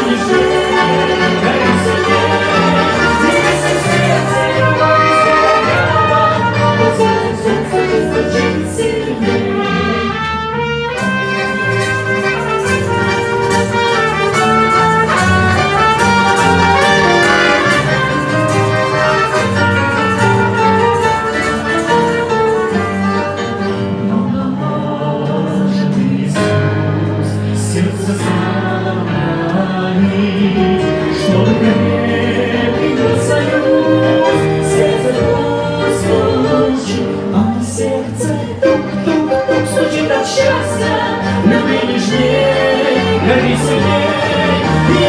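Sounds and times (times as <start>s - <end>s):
percussion beat: 0.0s - 9.2s, 11.0s - 23.8s, 40.4s - 45.0s
brass-like lead melody: 0.0s - 24.1s
bass notes: 0.0s - 25.2s.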